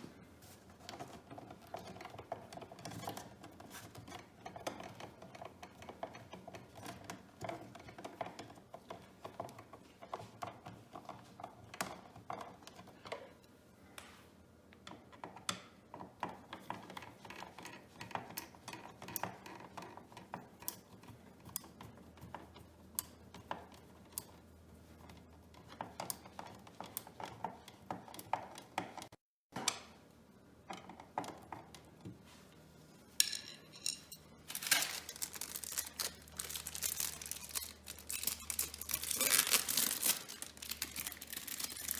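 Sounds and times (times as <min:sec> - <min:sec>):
small parts clicking and rattling: 0:33.2 - 0:41.9.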